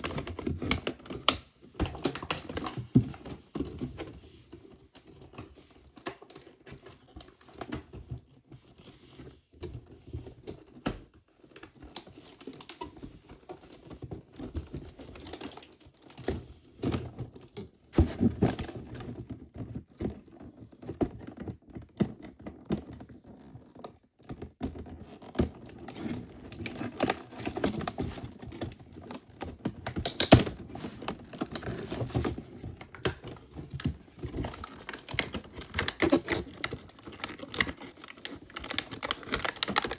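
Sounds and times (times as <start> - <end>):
packaging rustling: 25.6 - 39.9.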